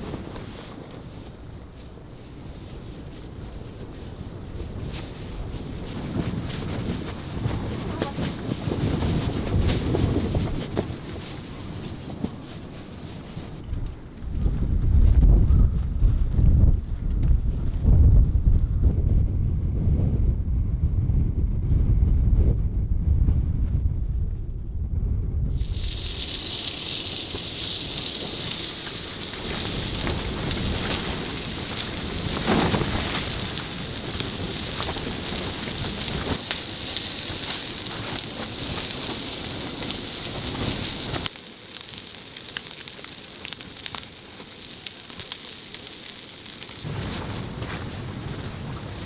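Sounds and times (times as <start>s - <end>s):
crackling and sizzling with pops: 0.0s - 15.3s, 25.5s - 49.0s
wind rumble on microphone: 0.0s - 46.0s, 46.6s - 49.0s.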